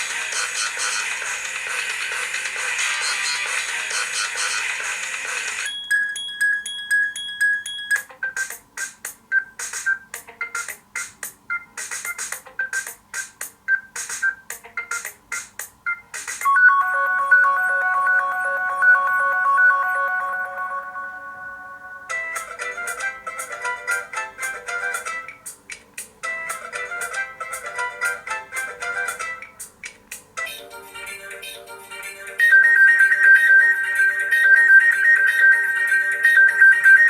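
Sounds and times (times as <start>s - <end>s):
rhythmic clicking tone with beeps: 0.2s - 21.2s, 32.1s - 37.0s
electronic pings: 5.7s - 8.6s, 15.9s - 22.2s, 32.4s - 37.0s
chiming chord: 16.5s - 22.5s.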